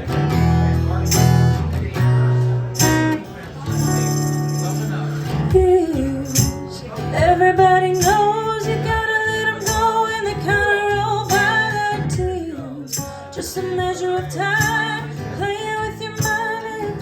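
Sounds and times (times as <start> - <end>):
strummed acoustic guitar: 0.0 - 17.0
tambourine beat: 1.0 - 1.6, 2.7 - 16.8
person singing: 5.3 - 17.0.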